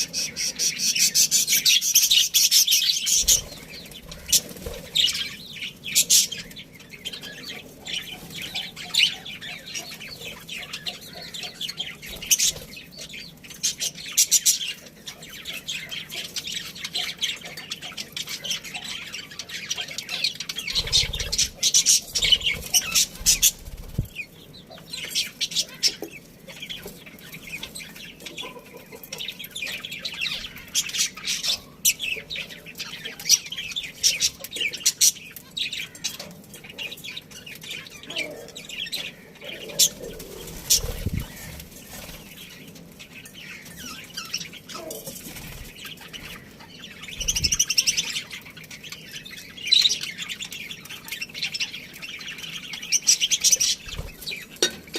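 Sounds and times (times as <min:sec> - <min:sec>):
budgerigars chirping: 0:00.0 - 0:42.6.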